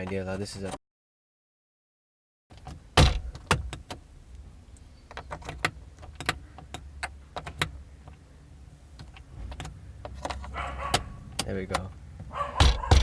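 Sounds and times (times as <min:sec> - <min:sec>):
plastic knobs clicking: 0:09.0 - 0:12.0.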